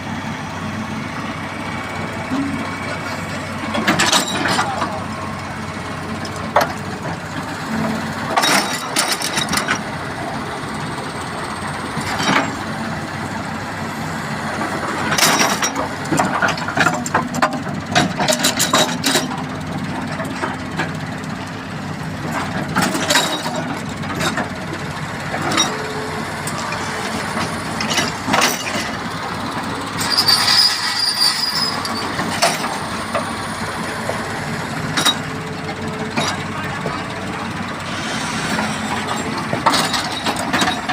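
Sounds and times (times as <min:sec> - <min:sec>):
heavy machinery humming: 0:00.0 - 0:40.9
metal clanks and knocks: 0:03.7 - 0:05.0, 0:06.2 - 0:09.9, 0:15.0 - 0:21.0, 0:22.2 - 0:30.3, 0:31.8 - 0:33.4, 0:34.0 - 0:37.7, 0:38.5 - 0:40.9
high-pitched scraping: 0:30.0 - 0:32.2.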